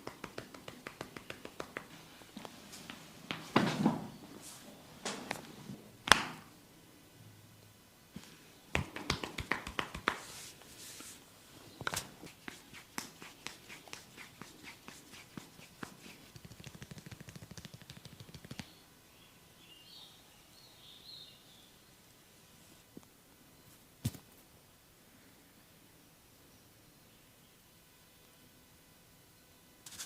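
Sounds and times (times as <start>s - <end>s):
hands snapping: 0.0s - 2.0s, 6.0s - 6.4s, 8.8s - 10.3s, 11.9s - 18.7s
light hand taps: 0.0s - 3.5s, 8.8s - 10.3s.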